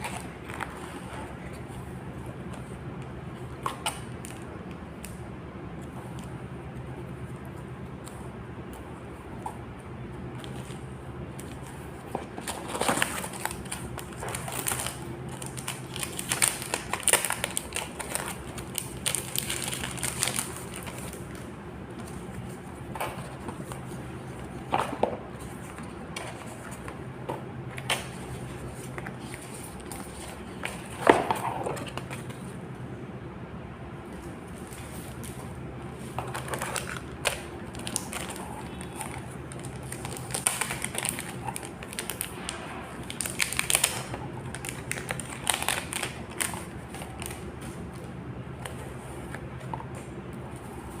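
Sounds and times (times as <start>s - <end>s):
low steady hum: 0.0s - 51.0s
packaging crinkling: 10.4s - 27.0s, 34.5s - 51.0s.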